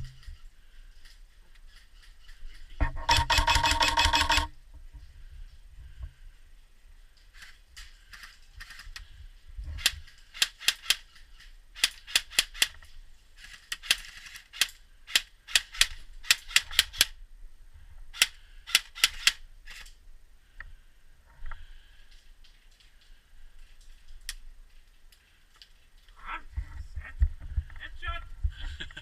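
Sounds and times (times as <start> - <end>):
airsoft guns firing: 3.0 - 4.5.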